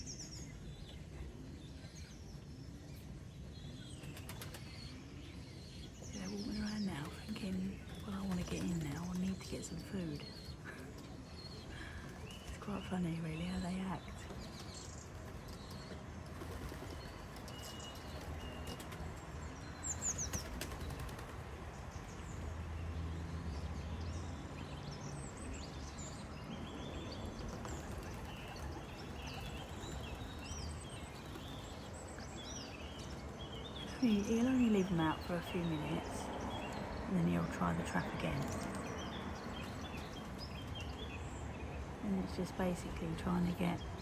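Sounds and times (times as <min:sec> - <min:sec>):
small birds chirping: 0:00.0 - 0:44.0
pigeons flapping wings: 0:04.0 - 0:04.8, 0:07.8 - 0:09.4, 0:14.2 - 0:19.2, 0:20.0 - 0:21.8, 0:27.3 - 0:32.0.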